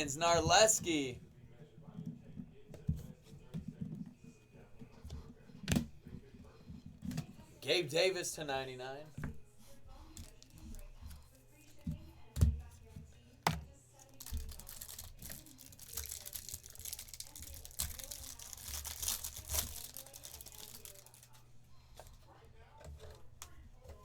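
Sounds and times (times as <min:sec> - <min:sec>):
wrapper crinkling and tearing: 0:14.2 - 0:21.3.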